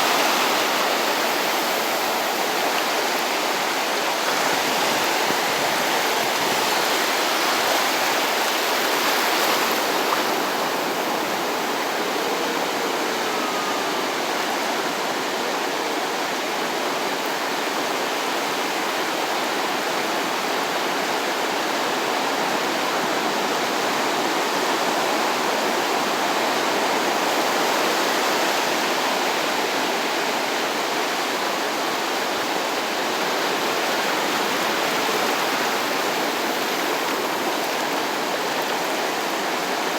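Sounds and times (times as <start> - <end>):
small waves washing up shore: 0.0 - 13.5.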